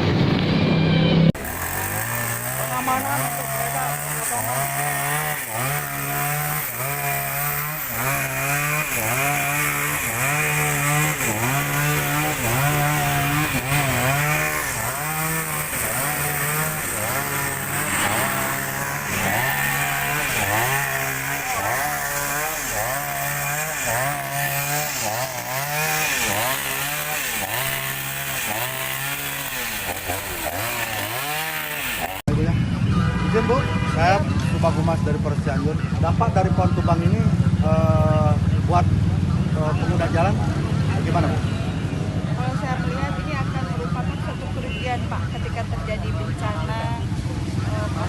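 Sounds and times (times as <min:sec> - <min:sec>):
chainsaw cutting tree trunk: 0:01.4 - 0:32.3.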